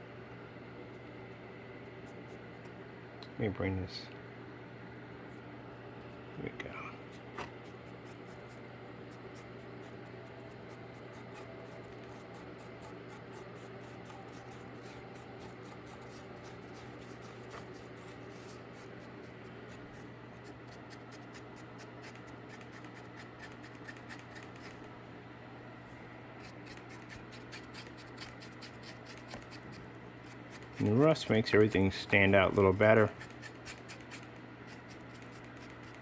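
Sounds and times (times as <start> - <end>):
steady low hum: 0.0 - 36.0
dry paintbrush scratching cardboard: 7.2 - 24.9, 26.4 - 36.0.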